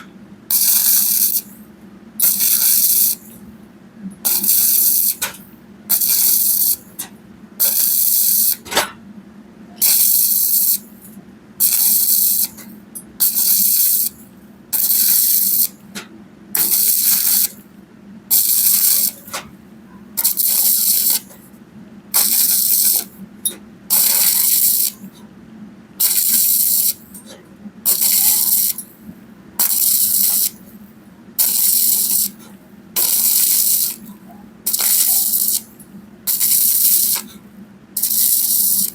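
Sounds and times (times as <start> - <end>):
welding arc crackling and hissing: 0.5 - 1.6, 2.2 - 3.4, 4.3 - 7.0, 7.6 - 8.7, 9.8 - 11.0, 11.6 - 12.6, 13.2 - 14.2, 14.8 - 15.8, 16.6 - 17.6, 18.3 - 19.4, 20.2 - 21.4, 22.2 - 23.2, 23.9 - 25.1, 26.0 - 27.1, 27.9 - 28.9, 29.6 - 30.7, 31.4 - 37.4, 38.0 - 38.9.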